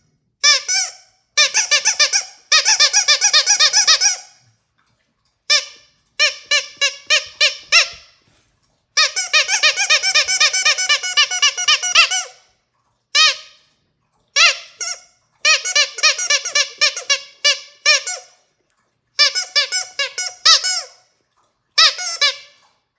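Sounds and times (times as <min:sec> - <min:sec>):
squeaky dog toy squeaking: 0:00.4 - 0:04.4, 0:05.5 - 0:08.2, 0:09.0 - 0:12.5, 0:13.2 - 0:13.6, 0:14.4 - 0:18.4, 0:19.2 - 0:21.0, 0:21.8 - 0:22.6.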